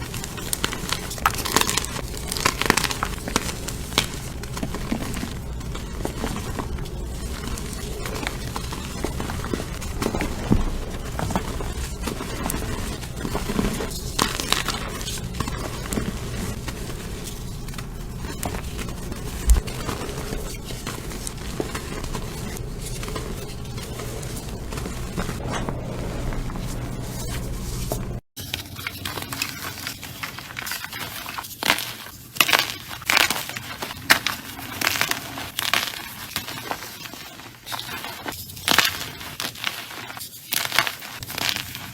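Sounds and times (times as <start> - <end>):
steady low hum: 0.0 - 28.2
slime crackling and crunching: 0.0 - 41.9.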